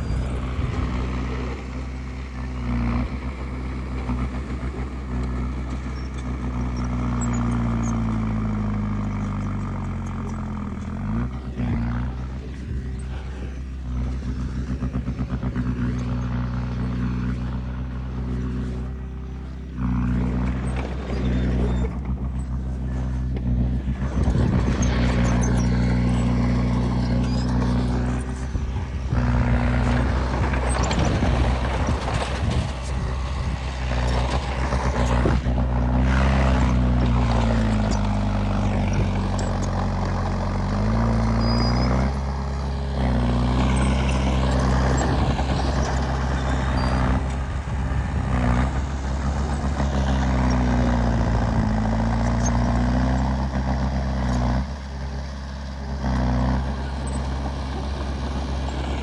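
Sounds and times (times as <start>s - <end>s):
heavy machinery diesel engines: 0.0s - 59.0s
rushing clattering noise: 20.0s - 40.3s.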